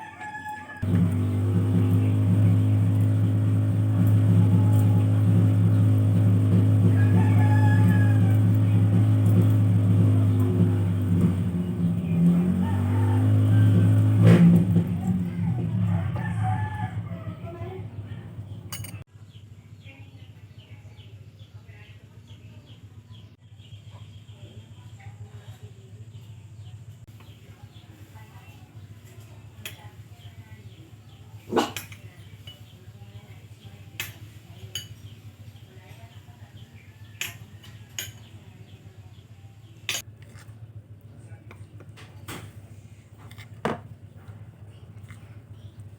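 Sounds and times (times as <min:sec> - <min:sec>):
steady low hum: 0:00.8 - 0:19.1
motor engine running: 0:00.8 - 0:21.2, 0:21.9 - 0:45.9
dog barking: 0:31.5 - 0:31.8.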